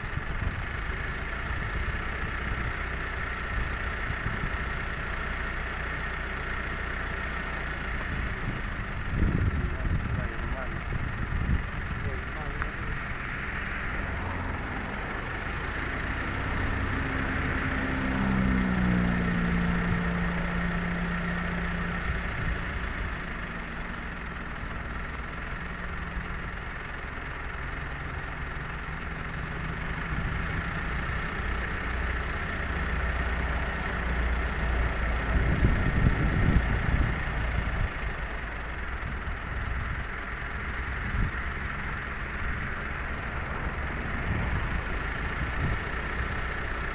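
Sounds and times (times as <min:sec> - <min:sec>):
motor engine running: 0:00.0 - 0:46.9.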